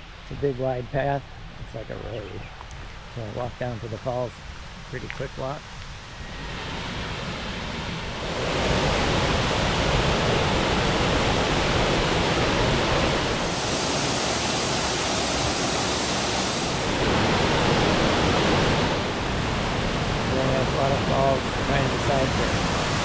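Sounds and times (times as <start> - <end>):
waterfall rushing: 8.2 - 23.0.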